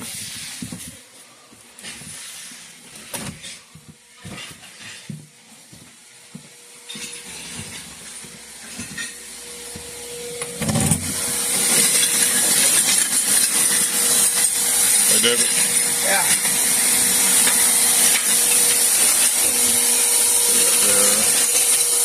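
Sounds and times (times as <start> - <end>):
footsteps: 0.0 - 12.2
demolition power tool running: 6.8 - 22.0.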